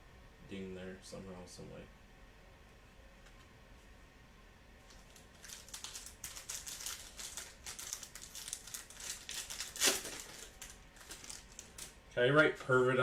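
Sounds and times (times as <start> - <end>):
plastic packaging crinkling: 4.9 - 12.0.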